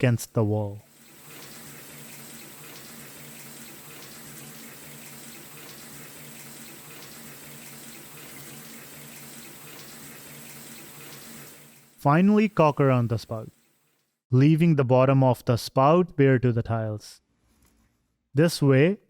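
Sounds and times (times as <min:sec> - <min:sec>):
water running into bathtub: 0:00.8 - 0:14.0.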